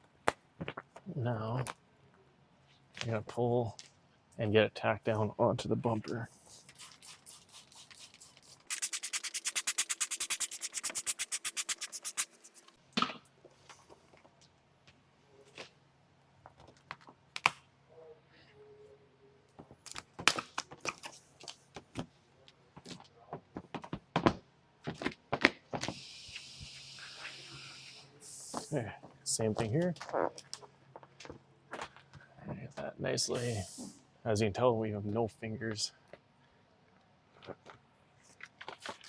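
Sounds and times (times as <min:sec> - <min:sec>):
spray hiss: 0:06.4 - 0:12.7, 0:25.9 - 0:28.7, 0:33.3 - 0:34.0.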